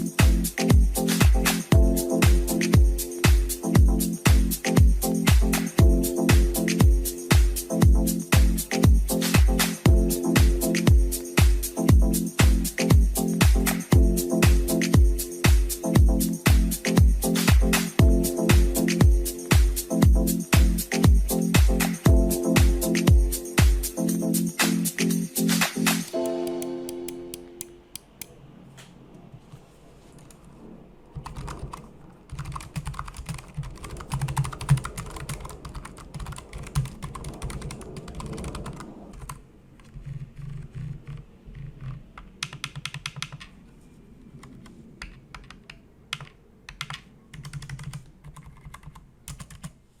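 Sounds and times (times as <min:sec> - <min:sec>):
typing on mechanical keyboard: 0:31.1 - 0:43.6, 0:44.4 - 0:49.8.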